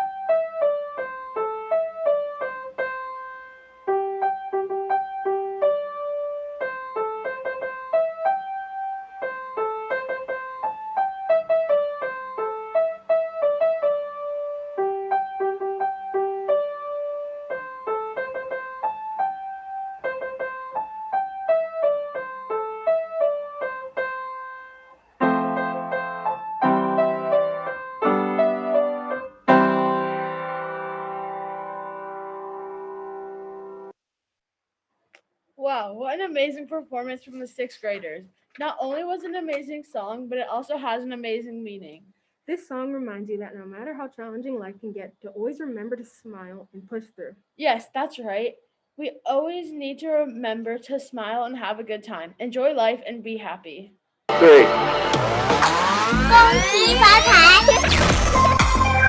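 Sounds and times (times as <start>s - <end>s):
piano melody and chords: 0.0s - 33.9s.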